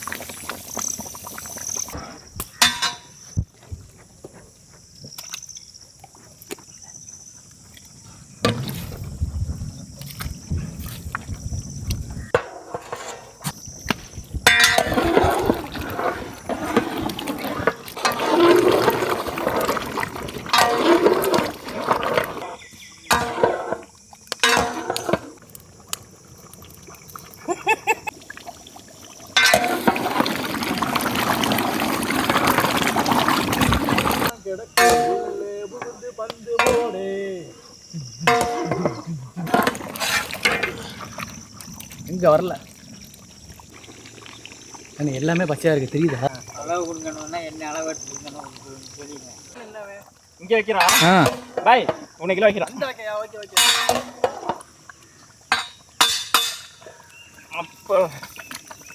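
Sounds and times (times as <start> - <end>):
liquid pouring into a pot: 14.8 - 22.4, 25.4 - 34.3, 39.4 - 49.5
people talking: 45.0 - 53.8.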